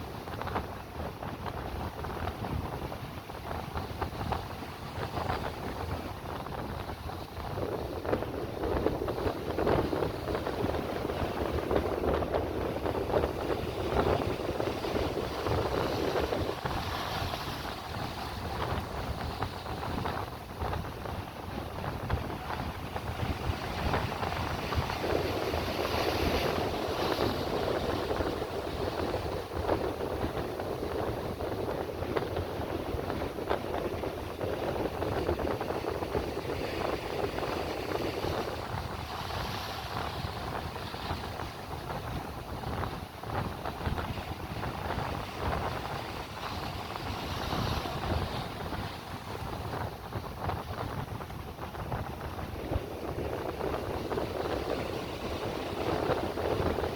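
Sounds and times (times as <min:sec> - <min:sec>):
sea waves washing onto shore: 0:00.0 - 0:56.9
wind buffeting microphone: 0:00.0 - 0:56.9.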